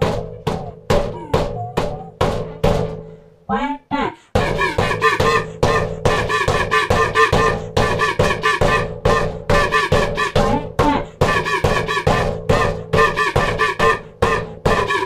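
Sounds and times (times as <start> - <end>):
music with fast beat: 0.0 - 3.0, 4.4 - 15.0
pitched tones: 0.5 - 2.2.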